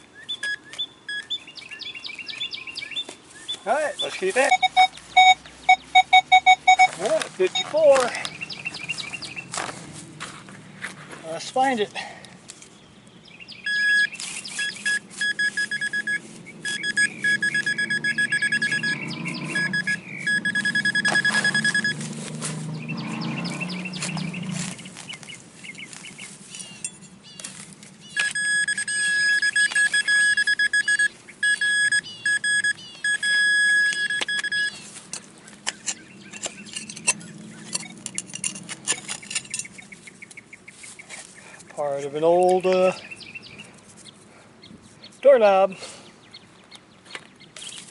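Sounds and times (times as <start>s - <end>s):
metal detector pinpointer beeping: 0.2s - 1.4s, 4.0s - 9.4s, 13.6s - 22.2s, 28.1s - 40.0s
digging in soil: 2.4s - 12.8s, 14.0s - 17.0s, 19.2s - 28.4s, 34.2s - 46.2s, 47.5s - 47.9s.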